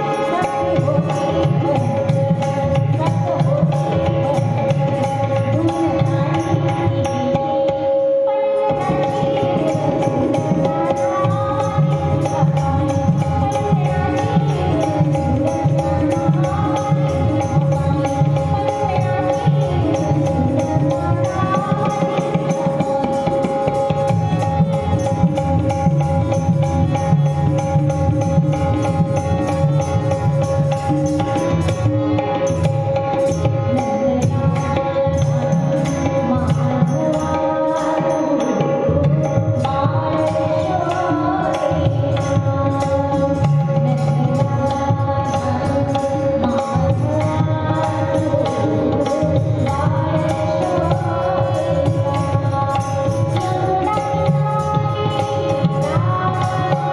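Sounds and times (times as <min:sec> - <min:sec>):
tabla rhythm: 0:00.0 - 0:56.9.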